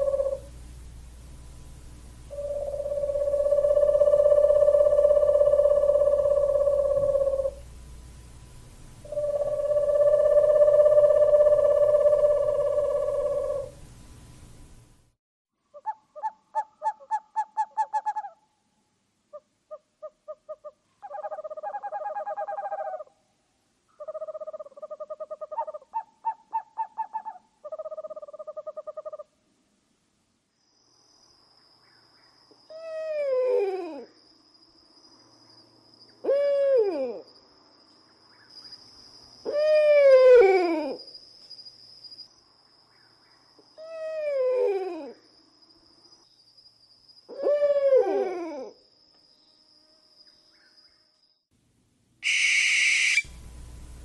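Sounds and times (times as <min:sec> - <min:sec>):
owl falling drawn-out calls: 0:00.0 - 0:00.6, 0:02.3 - 0:07.6, 0:09.0 - 0:13.8, 0:39.4 - 0:41.0, 0:52.2 - 0:53.5
owl hooting: 0:00.0 - 0:00.6, 0:02.2 - 0:07.7, 0:09.0 - 0:13.8, 0:15.7 - 0:18.4, 0:19.3 - 0:23.2, 0:24.0 - 0:29.3, 0:32.7 - 0:34.1, 0:36.2 - 0:37.3, 0:39.4 - 0:41.0, 0:43.8 - 0:45.2, 0:47.3 - 0:48.8, 0:52.2 - 0:53.4
high-pitched whine: 0:00.0 - 0:13.9.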